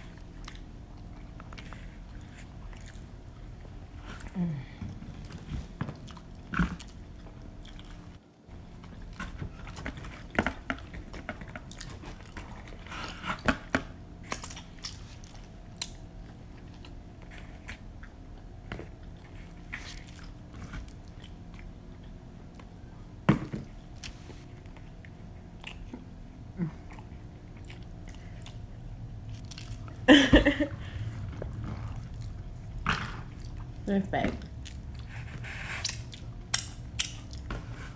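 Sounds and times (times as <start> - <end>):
biting and chewing pizza: 0.0 - 37.9.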